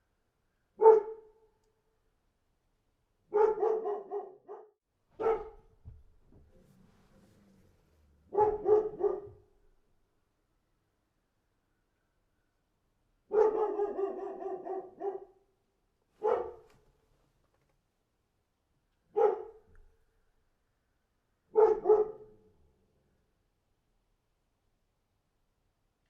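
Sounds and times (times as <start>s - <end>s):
dog barking: 0.8s - 1.4s, 3.3s - 5.8s, 8.3s - 9.5s, 13.3s - 15.5s, 16.2s - 16.7s, 19.1s - 19.7s, 21.5s - 22.5s.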